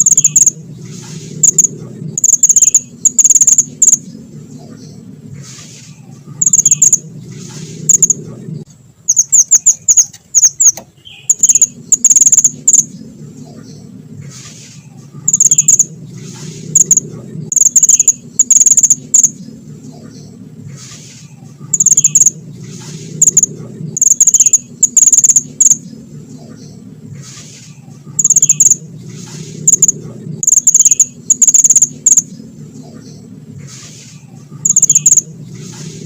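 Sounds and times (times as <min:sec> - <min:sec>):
songbird shrill rapid calls: 0:00.0 - 0:00.6, 0:01.4 - 0:04.0, 0:06.4 - 0:07.0, 0:07.9 - 0:08.2, 0:09.1 - 0:12.9, 0:15.3 - 0:15.9, 0:16.7 - 0:19.4, 0:21.7 - 0:22.4, 0:23.2 - 0:25.8, 0:28.2 - 0:28.8, 0:29.6 - 0:32.2, 0:34.6 - 0:35.2
steady low hum: 0:00.0 - 0:36.0.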